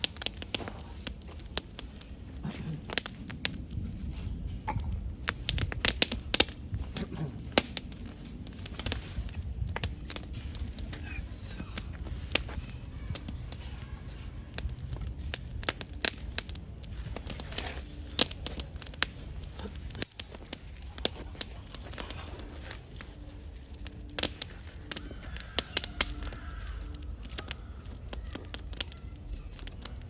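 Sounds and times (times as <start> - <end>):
campfire crackling and popping: 0.0 - 30.0.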